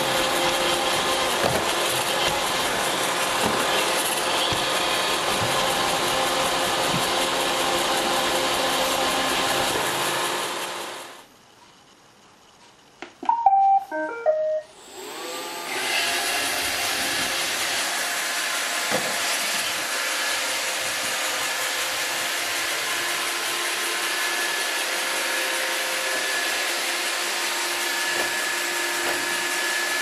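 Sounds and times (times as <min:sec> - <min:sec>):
robot vacuum whirring: 0:00.0 - 0:11.0, 0:14.8 - 0:30.0
electronic beep tune: 0:13.3 - 0:14.7.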